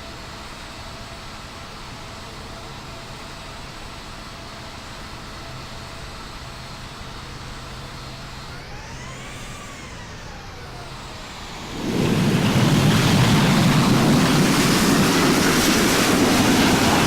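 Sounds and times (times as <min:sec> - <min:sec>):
engine whine: 0:04.8 - 0:17.0
airliner engine hum: 0:05.7 - 0:17.0.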